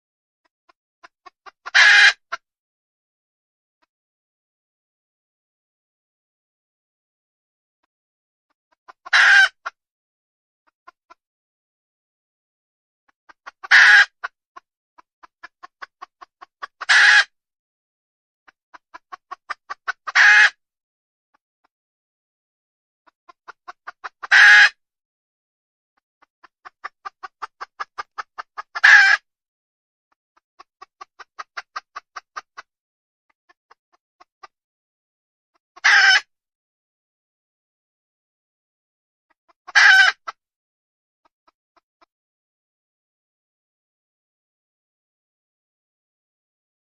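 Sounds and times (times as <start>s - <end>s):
hen clucking and squawking: 1.0s - 2.4s, 8.8s - 9.8s, 13.3s - 14.4s, 15.0s - 17.4s, 18.5s - 20.6s, 23.0s - 24.8s, 26.2s - 29.3s, 30.4s - 32.7s, 33.5s - 34.6s, 35.8s - 36.3s, 39.4s - 40.4s.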